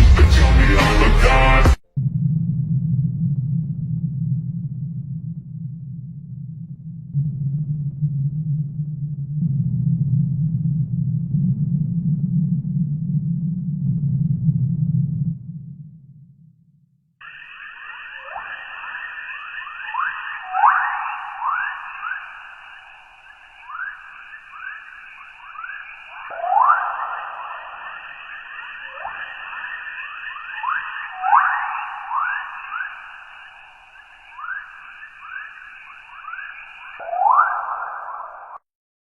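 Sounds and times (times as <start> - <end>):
steady high hiss: 17.2 - 37.0.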